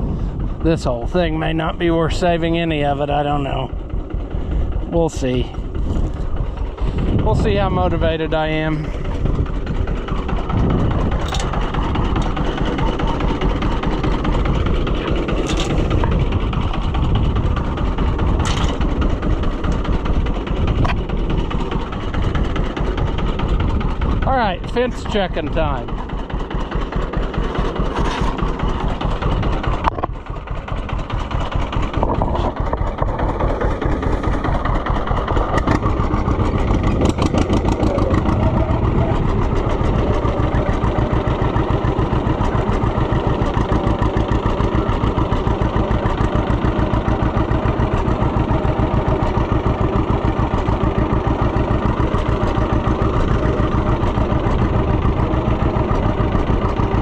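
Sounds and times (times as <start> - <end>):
vehicle engine running: 0.0 - 57.0
clunk: 11.2 - 12.4, 15.1 - 16.2, 18.4 - 19.8, 27.8 - 28.5.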